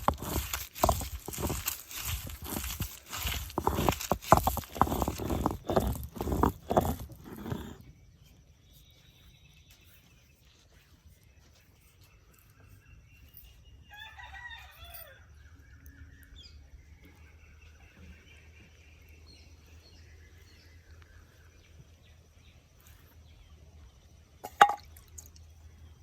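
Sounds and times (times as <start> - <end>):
faint rooster crowing: 13.8 - 15.4.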